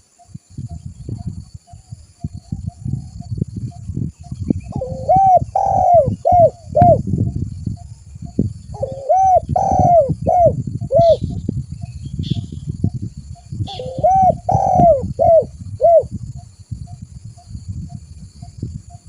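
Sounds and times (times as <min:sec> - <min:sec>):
dove cooing: 0:04.5 - 0:07.1, 0:08.7 - 0:11.4, 0:13.7 - 0:16.2.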